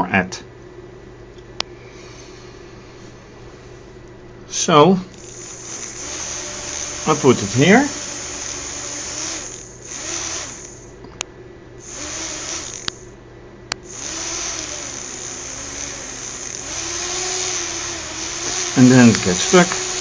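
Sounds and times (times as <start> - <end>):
small electric motors whirring: 5.2 - 11.0, 11.8 - 13.2, 13.8 - 20.0
sharp clicks: 12.0 - 13.1.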